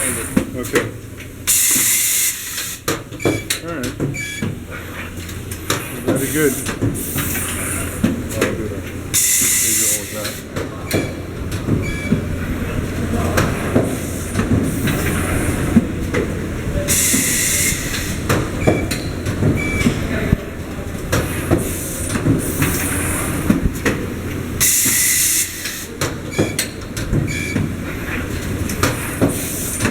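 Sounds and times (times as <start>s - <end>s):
plastic welding machine running: 5.2s - 11.7s
machine clicks and clanks: 5.2s - 12.3s, 16.9s - 29.9s.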